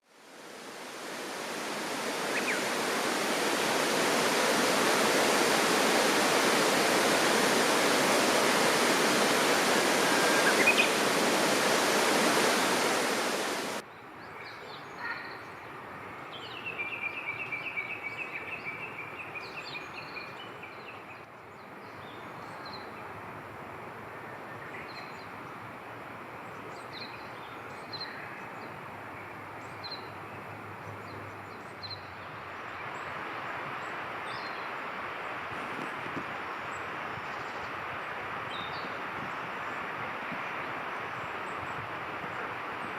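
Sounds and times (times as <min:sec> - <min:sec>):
rushing flowing water: 0:00.0 - 0:13.8, 0:28.1 - 0:42.9
birds calling and chirping: 0:08.6 - 0:13.8.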